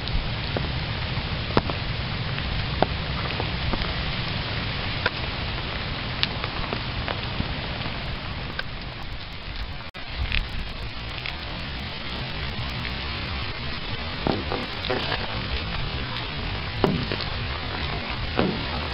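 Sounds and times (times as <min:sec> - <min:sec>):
raindrops striking close by: 0:00.0 - 0:18.9
steady rain pouring: 0:00.0 - 0:18.9.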